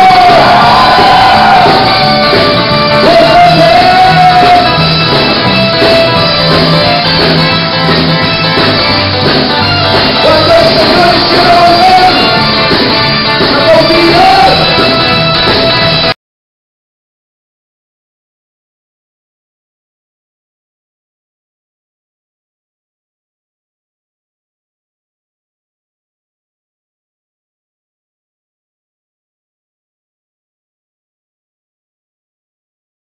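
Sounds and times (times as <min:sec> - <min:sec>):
person singing with band: 0:00.0 - 0:04.9, 0:10.1 - 0:12.5.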